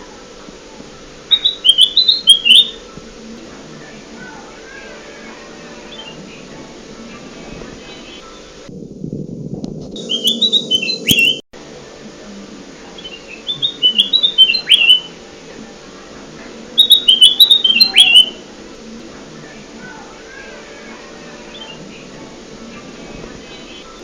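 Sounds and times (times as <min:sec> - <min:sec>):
bulbul singing: 0:01.0 - 0:07.2, 0:10.0 - 0:11.4, 0:12.9 - 0:15.3, 0:16.6 - 0:24.0.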